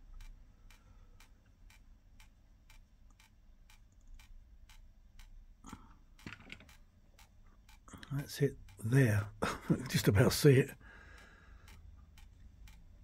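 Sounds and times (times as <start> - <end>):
faint ticking: 0.0 - 13.0.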